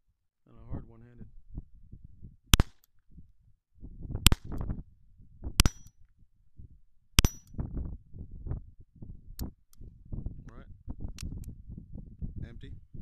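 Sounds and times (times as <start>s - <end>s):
pistol shots: 2.5s - 2.8s, 5.6s - 5.9s.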